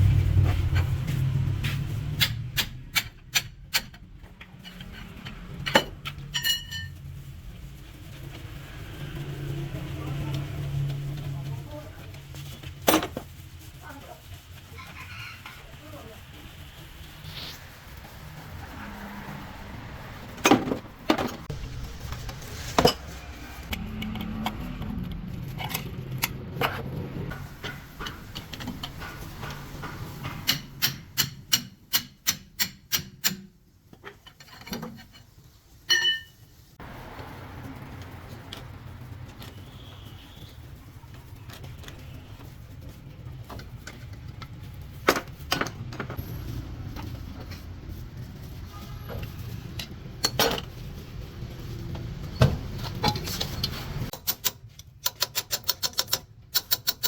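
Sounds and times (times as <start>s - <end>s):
metal tools knocking and clinking: 4.6s - 6.9s, 35.9s - 36.4s.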